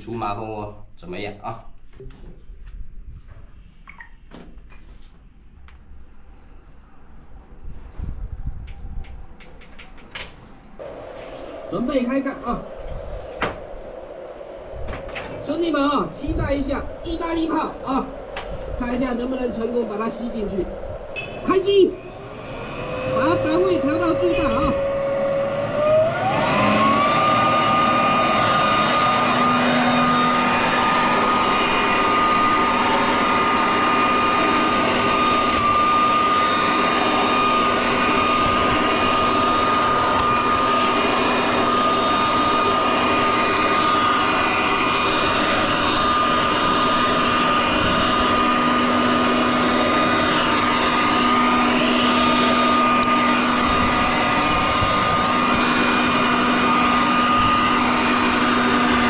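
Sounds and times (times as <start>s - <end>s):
vacuum shredder running: 22.0s - 59.0s.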